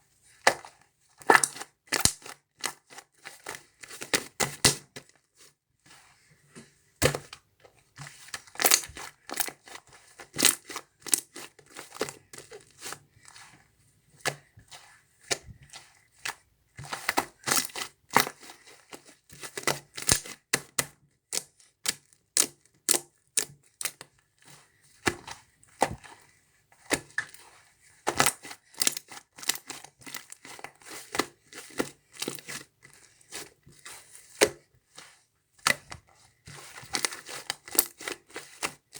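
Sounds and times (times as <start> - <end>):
slime crackling and tearing: 8.6 - 8.9.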